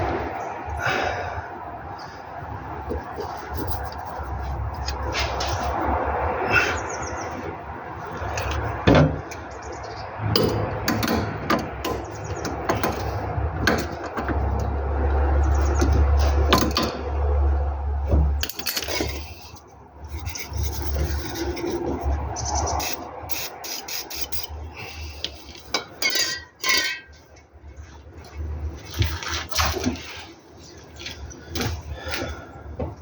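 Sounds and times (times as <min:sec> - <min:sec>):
metal scraping and squeaking: 0:18.2 - 0:27.4.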